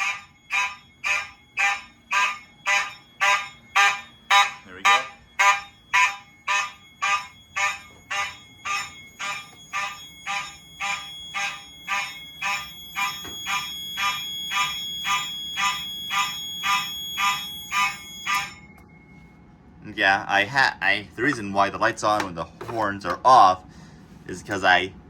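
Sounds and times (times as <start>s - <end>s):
pulsing fire alarm horns: 0.0s - 19.3s
steady high tone: 0.0s - 19.4s.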